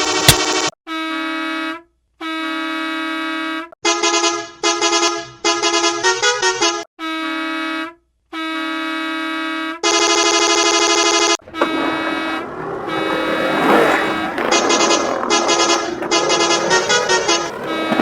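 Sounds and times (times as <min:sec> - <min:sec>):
bus horn blasts: 0:00.9 - 0:18.0
multi-tone musical horn: 0:00.9 - 0:18.0.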